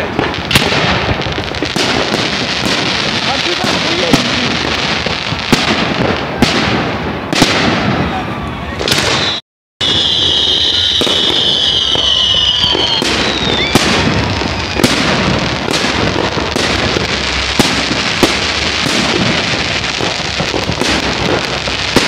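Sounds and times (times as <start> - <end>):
fireworks bangs and crackling: 0.0 - 22.0
firework whistle: 7.3 - 22.0.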